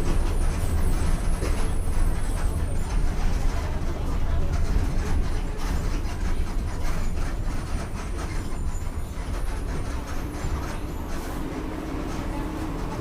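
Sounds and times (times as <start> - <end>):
bus diesel engine drone: 0.0 - 13.0
road noise: 7.2 - 13.0.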